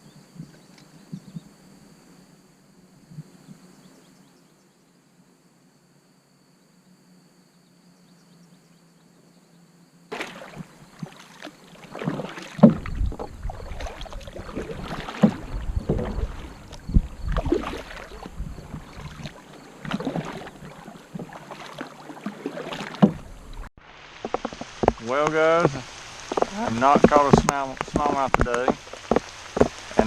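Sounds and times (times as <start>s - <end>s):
paddle strokes splashing water: 10.1s - 30.0s
knocks on kayak hull: 12.0s - 19.3s, 22.7s - 23.4s, 26.3s - 30.0s.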